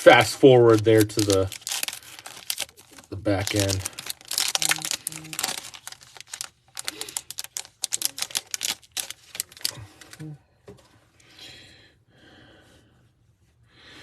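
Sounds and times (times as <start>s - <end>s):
cards and wrapper crinkling: 0.0s - 10.2s.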